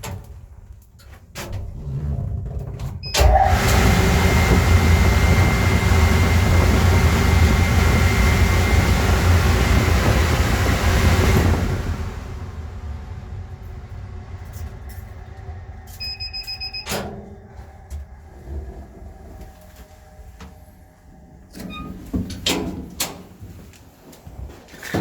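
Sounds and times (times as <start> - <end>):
fans running down: 3.2 - 24.1
pulsing electronic beep: 15.9 - 17.0.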